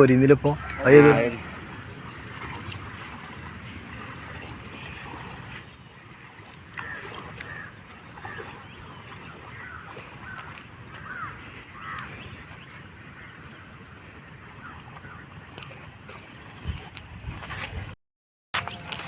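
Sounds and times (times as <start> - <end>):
bird calling in arching notes: 0.0 - 4.1
steady outdoor background hiss: 0.0 - 17.8.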